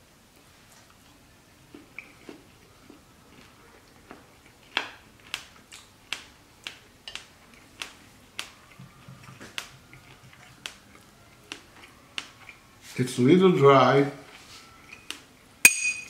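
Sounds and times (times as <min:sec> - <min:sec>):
chewing bread: 0:00.6 - 0:13.0.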